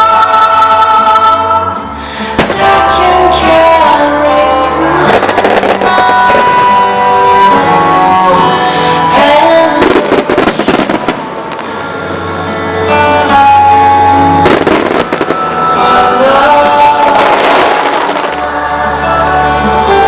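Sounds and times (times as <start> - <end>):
music playing: 0.0 - 20.0
firework bangs and crackles: 2.4 - 3.9, 5.0 - 7.7, 9.7 - 12.2, 14.4 - 18.4.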